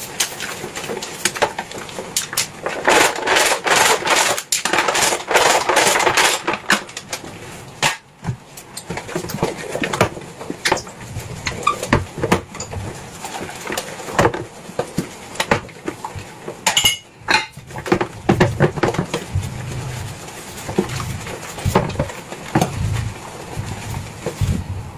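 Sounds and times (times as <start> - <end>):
dishes and cutlery clinking: 16.6 - 17.6.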